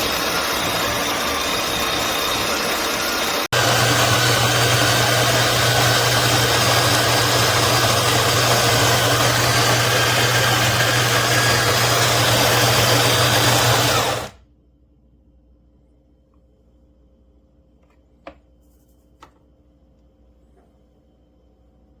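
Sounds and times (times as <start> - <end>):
electric coffee grinder running: 0.0 - 14.4.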